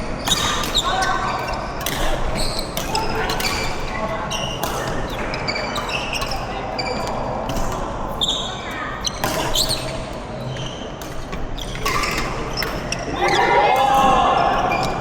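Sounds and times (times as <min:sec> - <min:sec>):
shoe squeaks on court floor: 0:00.2 - 0:07.3, 0:08.2 - 0:11.0, 0:11.6 - 0:13.5
racket hitting shuttlecock: 0:00.2 - 0:07.9, 0:09.2 - 0:10.0
players' voices: 0:12.9 - 0:15.0.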